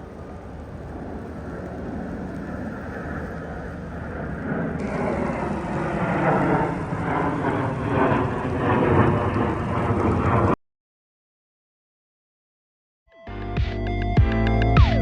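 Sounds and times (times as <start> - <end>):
wind noise on microphone: 0.0 - 10.6.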